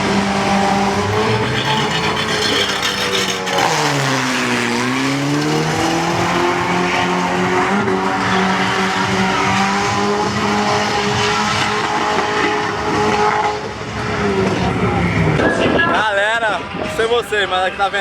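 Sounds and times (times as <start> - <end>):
car engine at high revs: 0.0 - 15.5
tyres squealing: 0.4 - 7.4.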